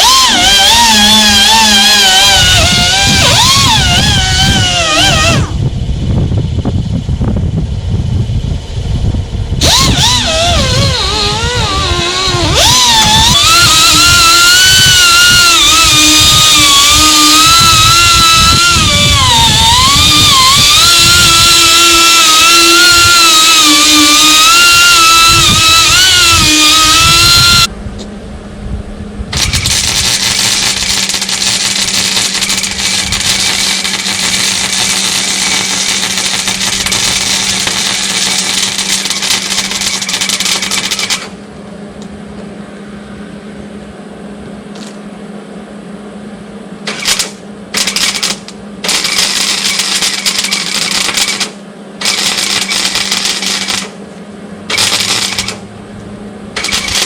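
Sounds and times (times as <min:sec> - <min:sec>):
welder arc crackling: 0:00.0 - 0:05.6, 0:09.6 - 0:27.7, 0:29.4 - 0:41.4, 0:46.9 - 0:54.0, 0:54.7 - 0:55.6, 0:56.6 - 0:57.0
steady low hum: 0:00.0 - 0:57.0.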